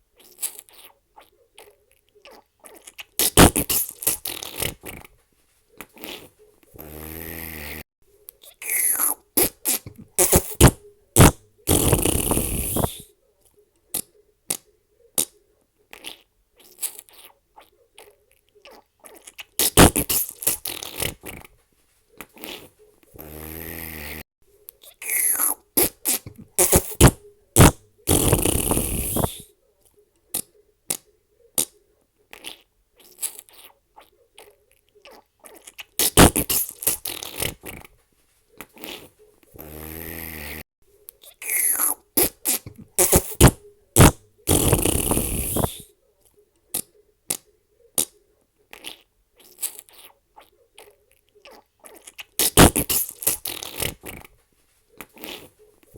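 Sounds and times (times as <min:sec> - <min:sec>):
farts: 0:00.2 - 0:01.0, 0:02.3 - 0:05.1, 0:05.9 - 0:07.8, 0:08.4 - 0:13.0, 0:15.9 - 0:17.4, 0:19.1 - 0:21.5, 0:22.3 - 0:24.2, 0:24.8 - 0:29.4, 0:31.6 - 0:33.8, 0:35.1 - 0:37.9, 0:38.7 - 0:40.6, 0:41.2 - 0:45.9, 0:48.7 - 0:50.2, 0:51.5 - 0:54.3, 0:55.1 - 0:55.6.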